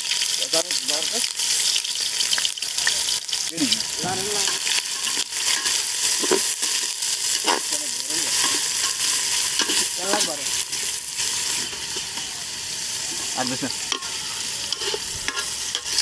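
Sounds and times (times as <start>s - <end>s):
curry sizzling in a pot: 0.0s - 16.0s
spoon scraping against pot: 13.9s - 16.0s.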